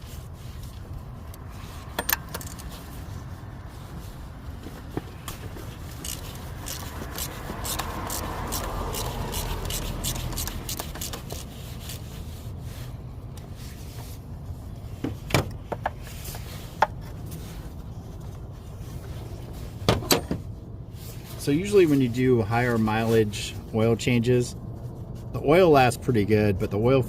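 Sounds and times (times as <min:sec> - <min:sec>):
ratchet clicking: 0:05.9 - 0:12.0.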